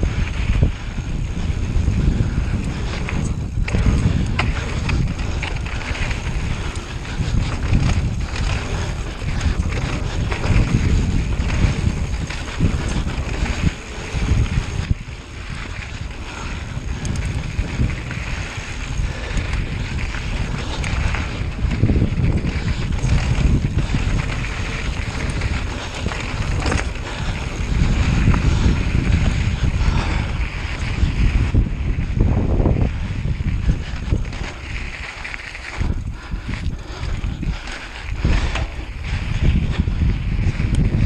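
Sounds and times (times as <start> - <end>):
wind buffeting microphone: 0.0 - 41.0.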